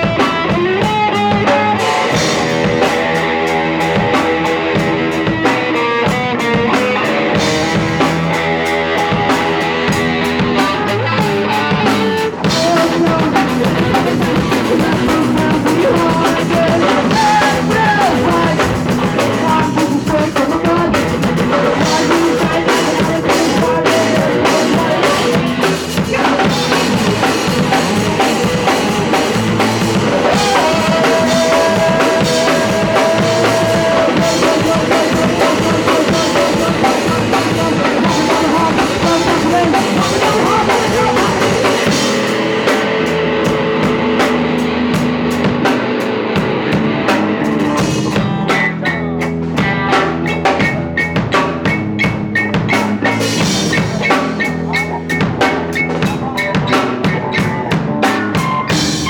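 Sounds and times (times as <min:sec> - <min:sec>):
punk rock band playing live: 0:00.0 - 0:59.0.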